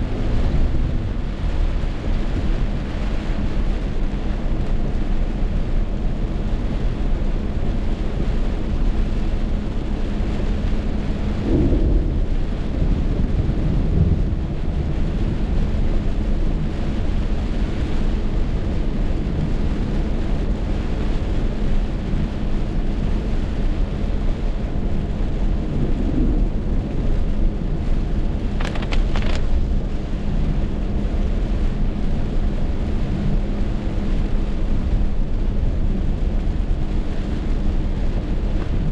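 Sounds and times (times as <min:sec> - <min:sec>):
deep low rumble: 0:00.0 - 0:38.9
heavy rain: 0:00.0 - 0:38.9
sharp crackle: 0:28.4 - 0:30.1.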